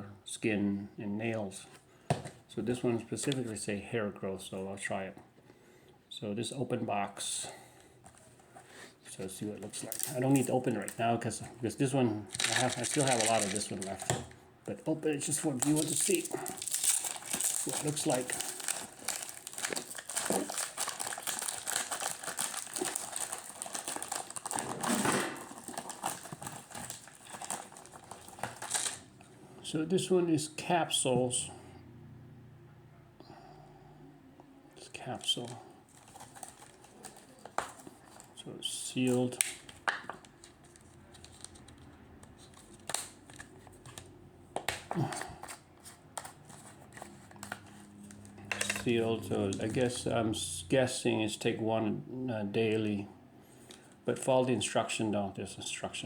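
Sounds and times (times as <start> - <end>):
paperboard box crinkling: 12.3 - 14.4, 15.2 - 29.0, 35.4 - 38.3.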